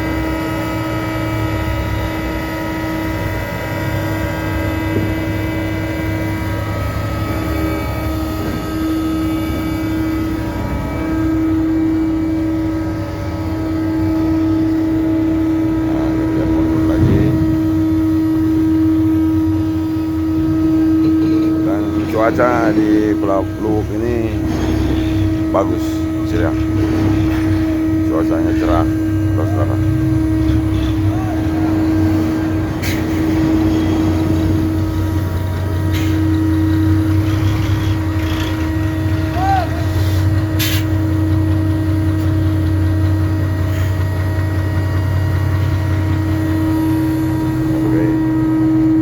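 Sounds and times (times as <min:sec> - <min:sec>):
heavy machinery droning: 0:00.0 - 0:49.0
faint voices: 0:27.9 - 0:32.2.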